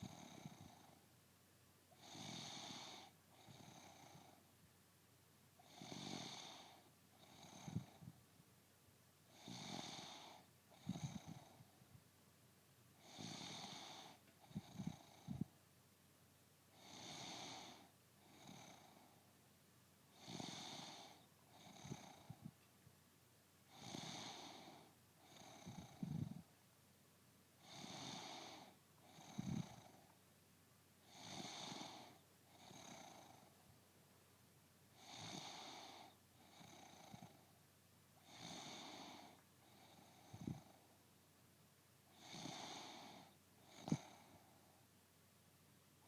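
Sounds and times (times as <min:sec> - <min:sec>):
woman snoring: 0:02.0 - 0:04.2, 0:05.7 - 0:07.9, 0:09.4 - 0:11.5, 0:13.1 - 0:15.5, 0:16.8 - 0:17.8, 0:20.2 - 0:22.4, 0:23.8 - 0:26.4, 0:27.7 - 0:30.0, 0:31.1 - 0:33.4, 0:35.0 - 0:37.4, 0:38.3 - 0:40.7, 0:42.2 - 0:44.3.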